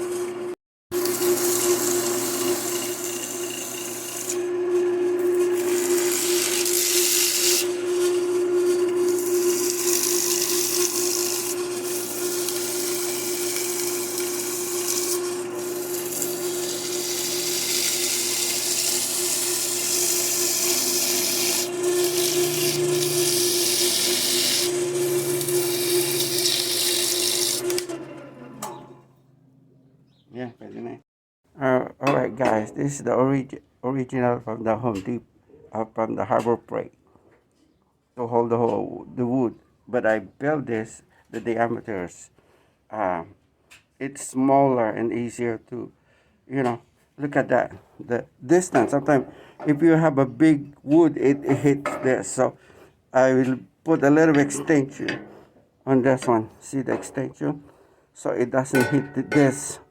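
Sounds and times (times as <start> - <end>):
lathe motor hum: 0.1 - 28.6
tool scraping spinning aluminium: 1.0 - 28.0.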